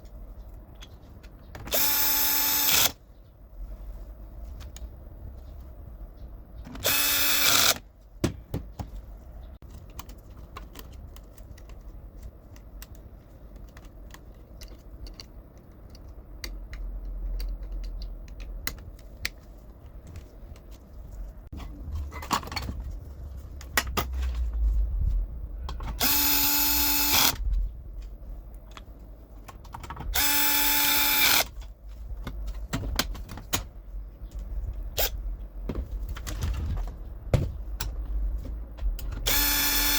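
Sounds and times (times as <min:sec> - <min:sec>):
parts clicking and knocking: 0:06.5 - 0:20.8, 0:25.6 - 0:39.9
cordless screwdriver driving screws: 0:06.8 - 0:07.8, 0:39.3 - 0:39.9.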